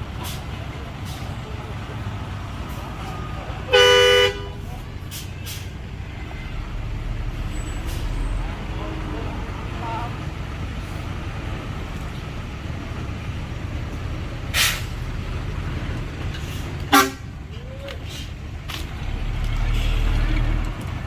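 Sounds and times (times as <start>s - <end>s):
diesel engines rumbling: 0.0s - 21.0s
horn toot: 3.7s - 4.6s, 16.9s - 17.3s.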